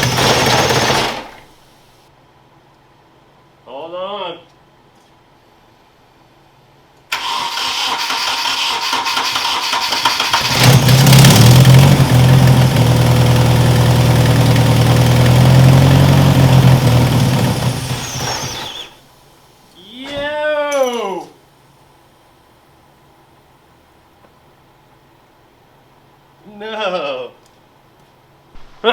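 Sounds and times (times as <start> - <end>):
engine starter cranking: 0.0 - 1.8, 7.1 - 19.0
engine running steady low note: 10.4 - 18.9.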